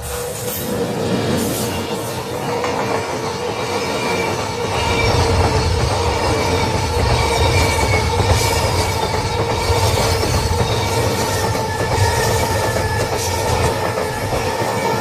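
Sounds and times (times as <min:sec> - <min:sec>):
train wheels rumbling on rails: 0:00.0 - 0:15.0
wavering wheel squeal: 0:03.7 - 0:15.0.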